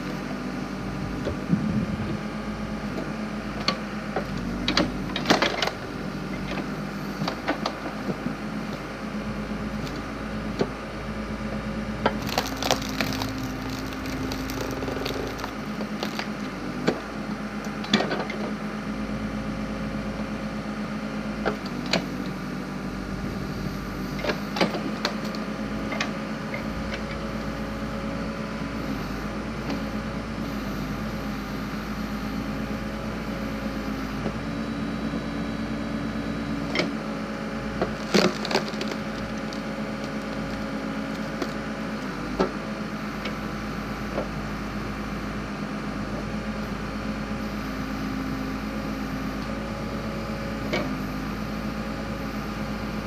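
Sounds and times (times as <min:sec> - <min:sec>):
backhoe engine running: 0:00.0 - 0:53.0
wood cracking and splintering: 0:12.0 - 0:16.7, 0:37.7 - 0:41.7.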